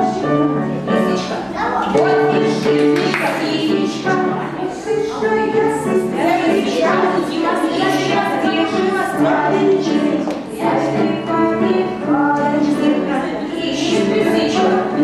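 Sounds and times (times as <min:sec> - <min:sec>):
song with several voices: 0:00.0 - 0:15.0.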